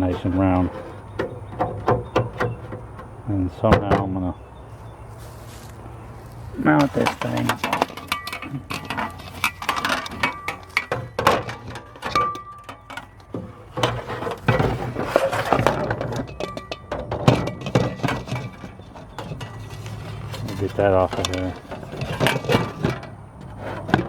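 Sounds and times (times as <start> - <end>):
tools clinking on a workbench: 6.8 - 23.1.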